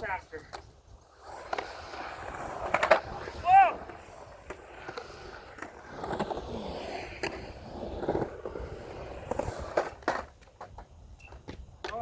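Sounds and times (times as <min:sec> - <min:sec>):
skateboard wheels rolling on concrete: 0:00.0 - 0:12.0
skateboard knocking: 0:08.0 - 0:12.0.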